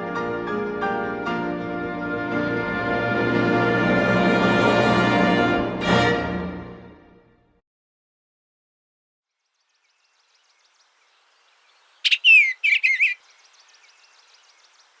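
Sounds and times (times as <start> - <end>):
bird singing warbled phrase: 11.7 - 15.0.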